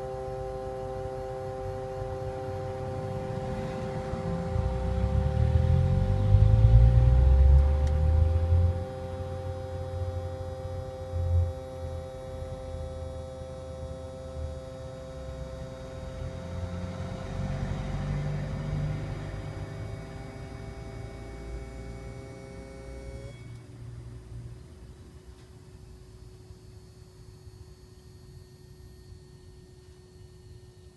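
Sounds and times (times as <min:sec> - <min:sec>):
faint tone: 0:00.0 - 0:23.8
electrical hum: 0:00.0 - 0:30.9.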